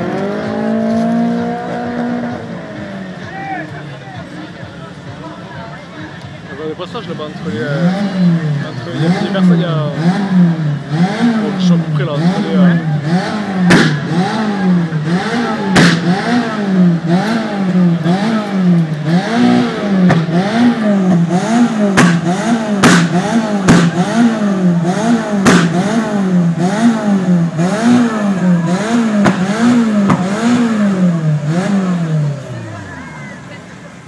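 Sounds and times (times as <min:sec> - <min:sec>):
car engine revving: 0:00.0 - 0:04.6, 0:06.7 - 0:34.0
exhaust pops: 0:09.2 - 0:32.3.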